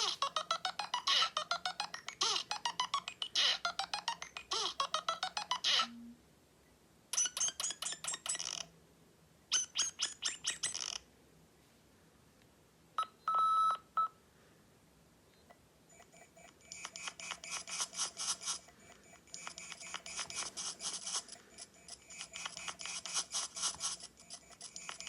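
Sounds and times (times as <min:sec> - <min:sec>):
clicky electronic ringtones: 0:15.4 - 0:25.0.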